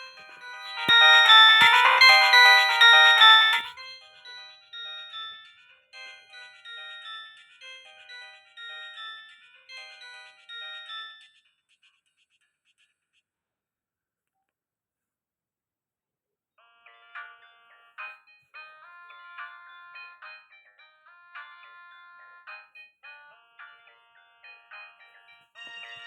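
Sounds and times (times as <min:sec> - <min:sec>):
beeping ringtone melody: 0:00.0 - 0:05.2, 0:18.8 - 0:26.0
mobile phone ringtone tune: 0:00.0 - 0:09.2, 0:16.6 - 0:26.0.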